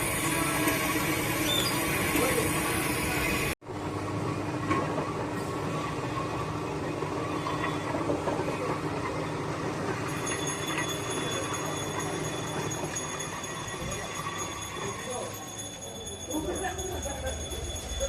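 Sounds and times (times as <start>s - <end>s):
machinery running: 0.0s - 3.6s.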